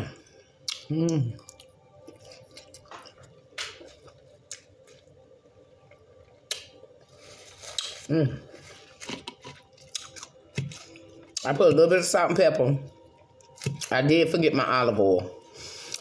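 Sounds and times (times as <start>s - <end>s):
person murmuring: 8.1s - 8.5s.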